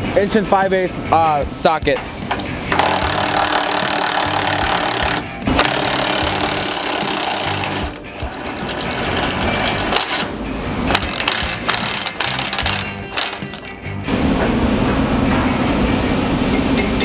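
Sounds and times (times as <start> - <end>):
impact wrench hammering: 2.0 - 14.1.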